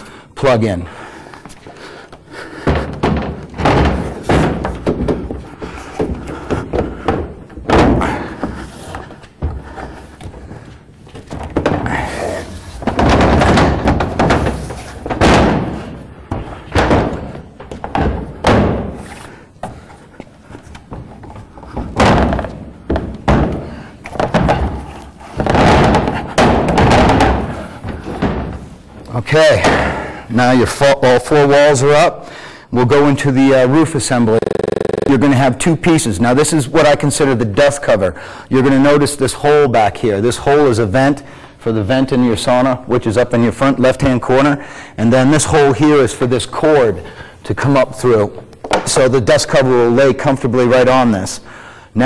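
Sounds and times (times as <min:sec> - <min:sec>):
wooden panels knocking and thudding: 0:01.6 - 0:30.1, 0:48.3 - 0:49.2.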